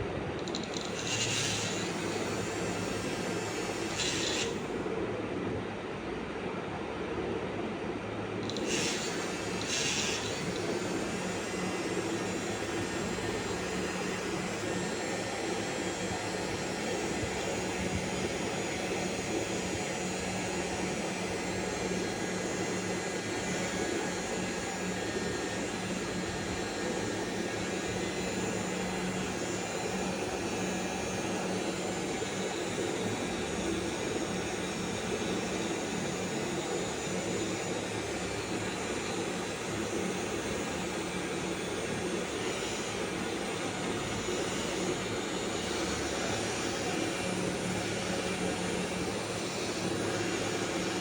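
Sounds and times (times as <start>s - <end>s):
machine whirring: 0.0s - 5.1s, 8.4s - 51.0s.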